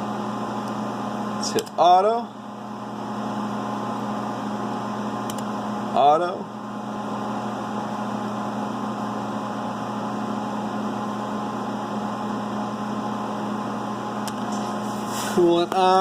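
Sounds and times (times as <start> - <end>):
milling machine hum and fan: 0.0 - 16.0.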